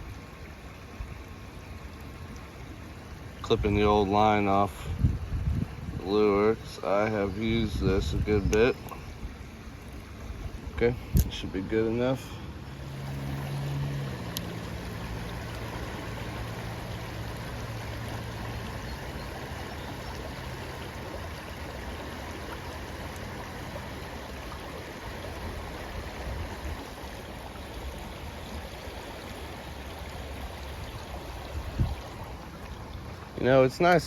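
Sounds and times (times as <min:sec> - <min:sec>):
river water flowing: 0:00.0 - 0:34.0.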